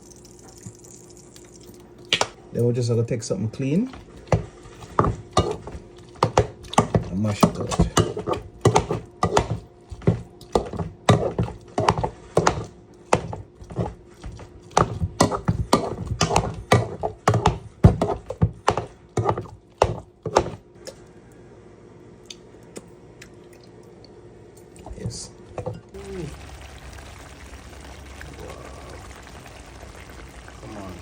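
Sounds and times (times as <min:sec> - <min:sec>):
masher thudding against pot: 0:04.3 - 0:13.4.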